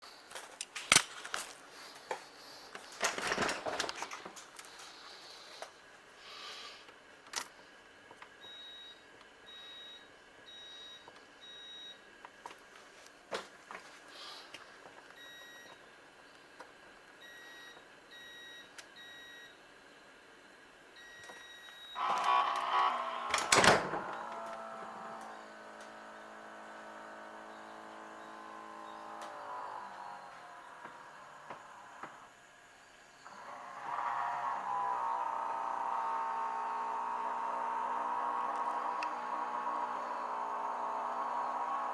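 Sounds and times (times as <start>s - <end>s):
refrigerator beeping: 8.4s - 12.0s, 15.2s - 15.8s, 17.2s - 19.5s, 21.0s - 41.9s
noisy burst: 22.0s - 32.4s.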